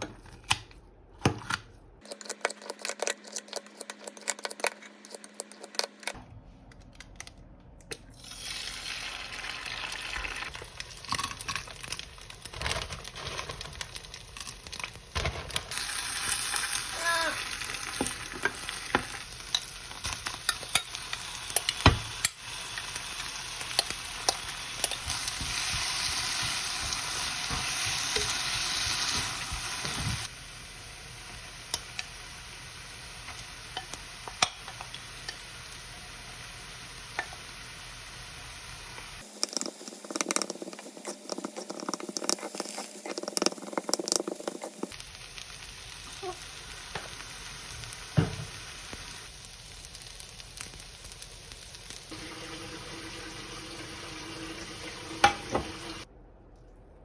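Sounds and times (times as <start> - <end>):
food sizzling in a pan: 8.2 - 56.1.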